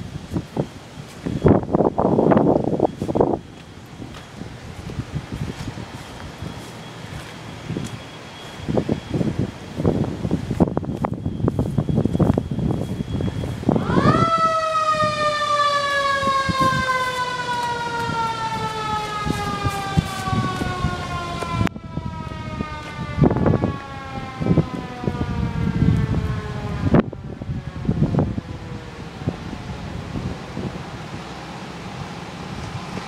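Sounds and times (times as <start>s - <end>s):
wind buffeting microphone: 0.0s - 33.0s
fire truck siren winding: 6.3s - 29.3s.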